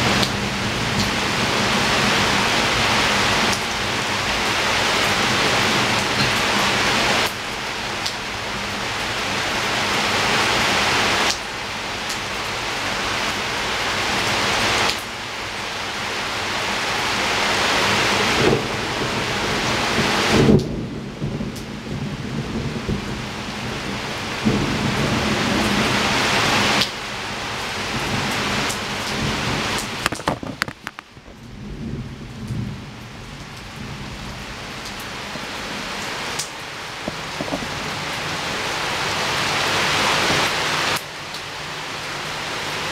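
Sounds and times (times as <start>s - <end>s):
rain against a window: 0.0s - 42.9s
low thunder rumbles: 31.0s - 36.0s.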